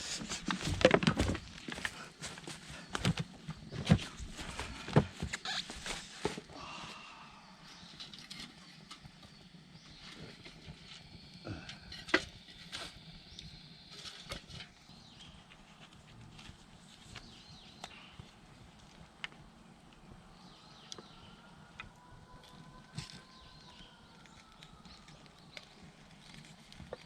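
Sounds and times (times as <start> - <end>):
campfire crackling and popping: 7.6 - 27.0.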